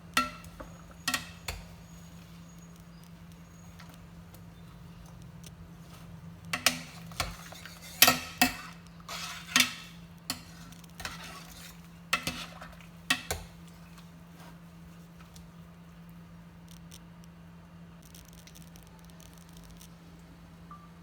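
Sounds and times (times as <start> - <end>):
metal ladle clinking against pot: 0.2 - 2.4, 5.9 - 13.6.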